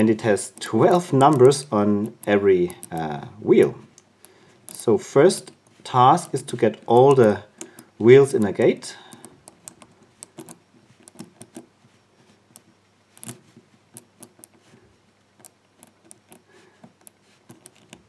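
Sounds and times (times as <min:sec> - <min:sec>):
padlock number wheels clicking: 0:00.0 - 0:11.7, 0:15.4 - 0:18.0.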